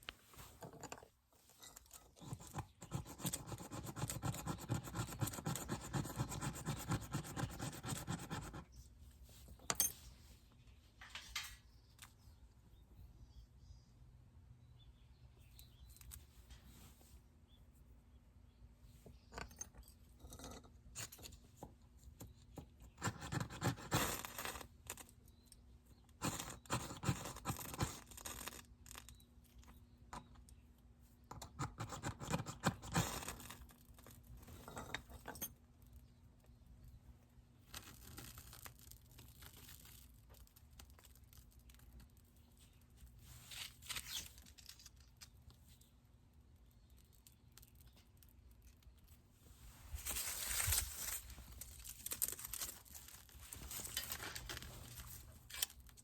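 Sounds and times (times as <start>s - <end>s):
rustling scraping and tearing: 43.2s - 45.2s, 49.5s - 56.0s.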